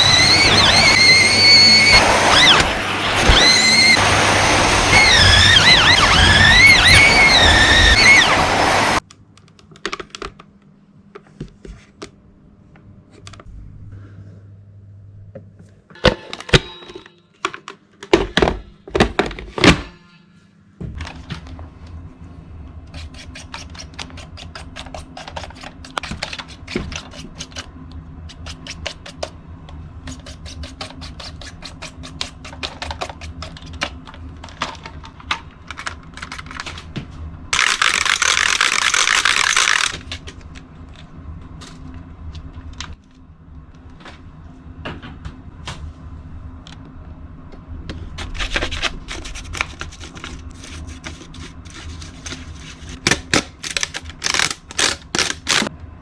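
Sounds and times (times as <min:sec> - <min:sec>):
vacuum cleaner motor hum: 0:00.0 - 0:09.0.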